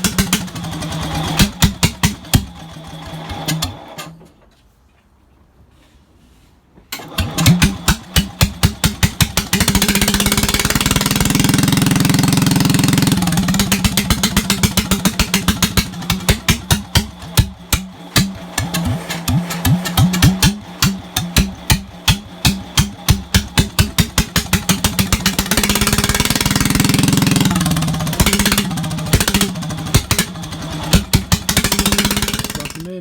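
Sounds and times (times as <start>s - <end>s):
small gasoline engine running: 0.0s - 4.2s, 7.0s - 33.0s.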